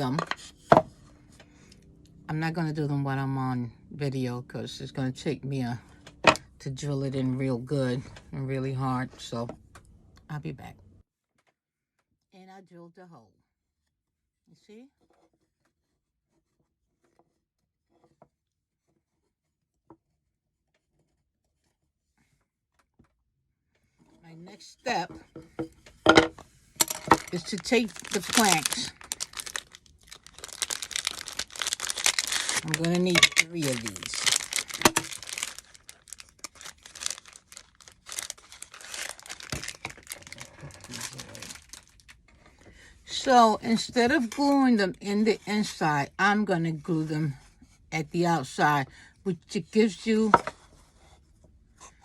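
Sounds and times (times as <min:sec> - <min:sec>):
crinkling and rustling: 0:15.0 - 0:42.8.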